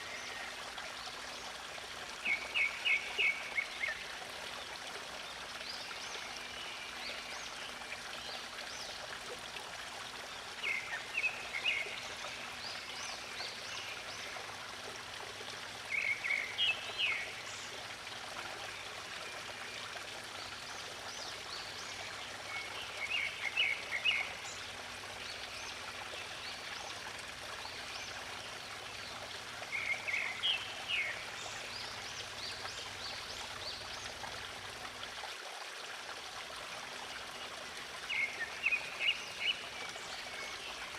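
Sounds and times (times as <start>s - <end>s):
stream water flowing: 0.0s - 40.9s
songbird singing: 15.9s - 17.8s, 29.6s - 33.9s.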